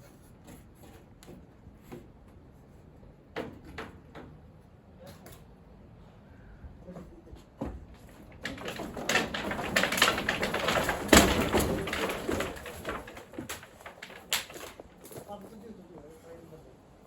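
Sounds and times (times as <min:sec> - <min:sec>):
wood cracking and clattering: 0:07.6 - 0:15.5.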